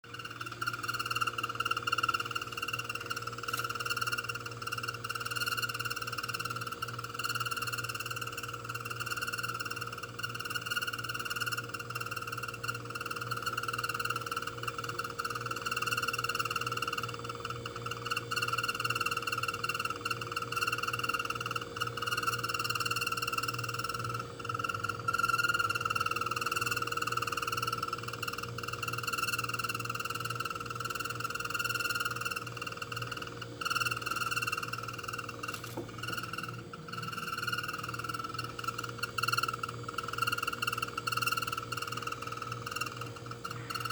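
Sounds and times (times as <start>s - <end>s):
refrigerator buzzing drone: 0.0s - 43.9s
low hum: 35.5s - 38.8s.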